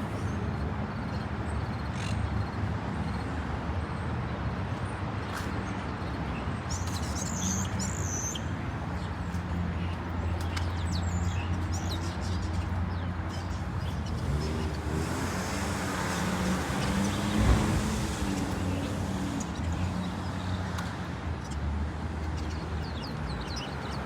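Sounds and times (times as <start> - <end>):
distant road traffic rumble: 0.0 - 24.0
birds chirping: 5.2 - 24.0.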